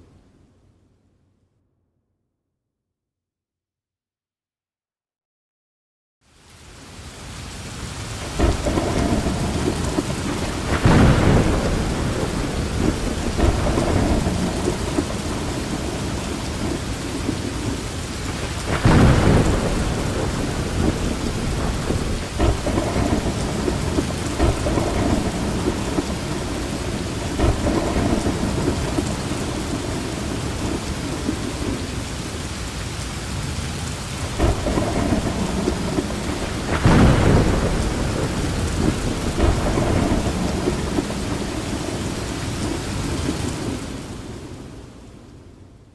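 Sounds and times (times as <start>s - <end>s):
heavy rain falling: 6.2s - 45.8s
thunder claps: 8.2s - 32.0s, 34.3s - 44.5s.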